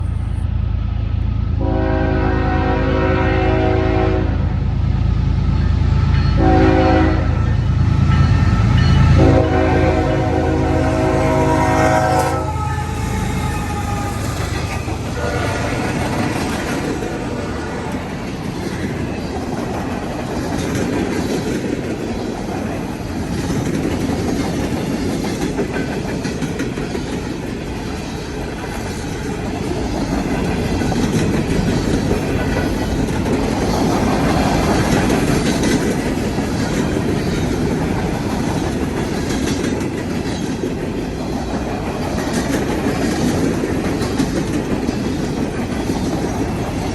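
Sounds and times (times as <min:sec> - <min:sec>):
freight train rumbling: 0:00.0 - 0:46.9
locomotive horn: 0:01.6 - 0:04.5, 0:06.0 - 0:07.7, 0:08.3 - 0:18.0
wheels clicking over rail joints: 0:11.6 - 0:46.9.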